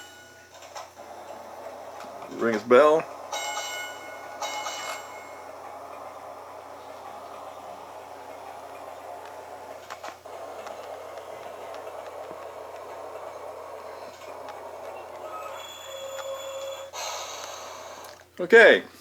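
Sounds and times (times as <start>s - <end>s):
model train diesel engine sound: 0.0s - 19.0s
clicks: 4.3s - 18.3s.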